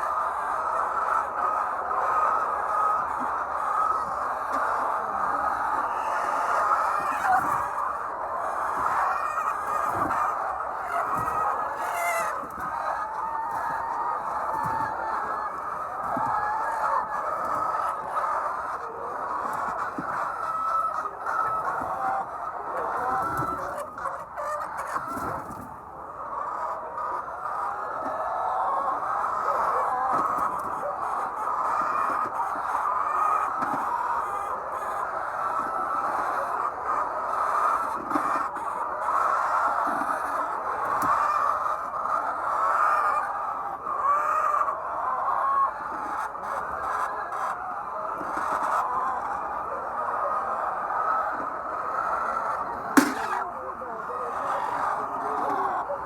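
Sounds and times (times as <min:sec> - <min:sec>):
hens clucking and calling: 0:00.0 - 0:56.0
clear hen call: 0:50.2 - 0:56.0.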